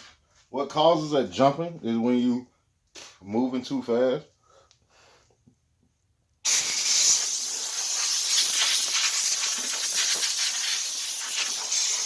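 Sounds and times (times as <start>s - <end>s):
power cutting tool hissing: 6.5s - 12.0s.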